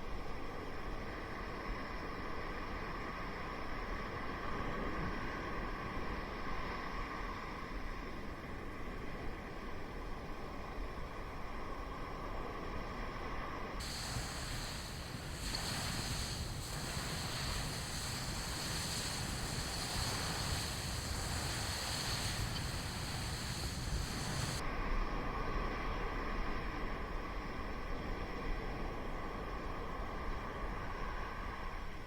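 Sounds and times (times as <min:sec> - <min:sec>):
surf breaking on beach: 0:13.8 - 0:24.6
strong wind on microphone: 0:13.8 - 0:24.7.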